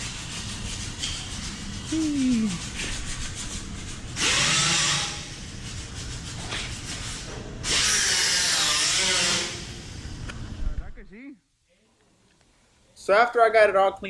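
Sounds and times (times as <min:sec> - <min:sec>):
power sander spinning on metal: 0:01.8 - 0:05.4.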